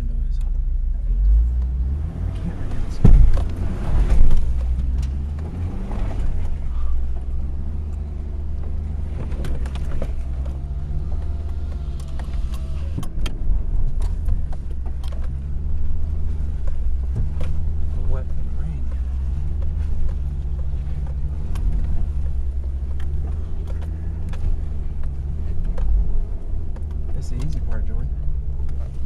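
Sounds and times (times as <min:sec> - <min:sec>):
truck engine running low: 0:01.0 - 0:29.0
knocks and clicks from rocks: 0:08.6 - 0:17.9.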